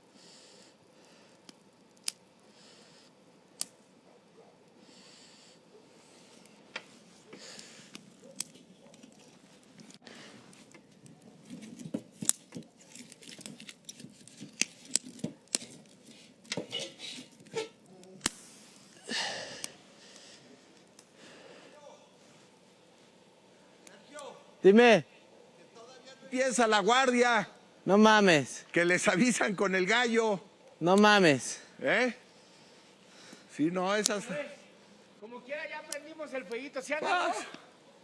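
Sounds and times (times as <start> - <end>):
breathy rush of noise: 0.0 - 11.8, 15.7 - 35.4
campfire snapping and crackling: 0.0 - 38.0
rustling of straw: 5.9 - 24.1.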